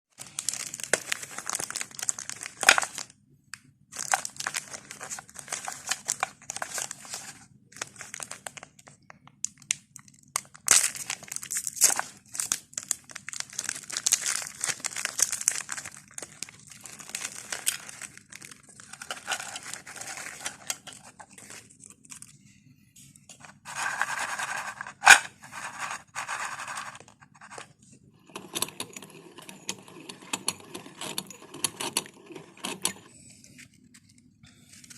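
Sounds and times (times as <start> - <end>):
plastic wrapper crinkling and tearing: 0.2 - 3.2, 3.9 - 22.4, 23.4 - 27.6.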